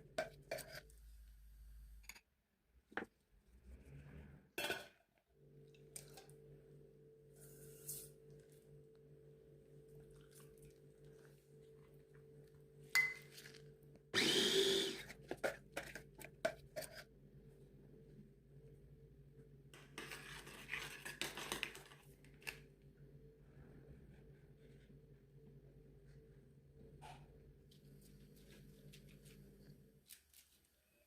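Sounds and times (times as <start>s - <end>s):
small electric motor humming: 14.2s - 15.0s.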